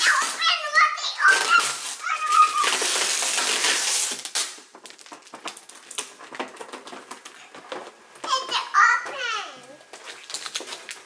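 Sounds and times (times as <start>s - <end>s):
packaging tearing: 0.0s - 0.6s, 1.2s - 7.2s, 10.0s - 11.0s.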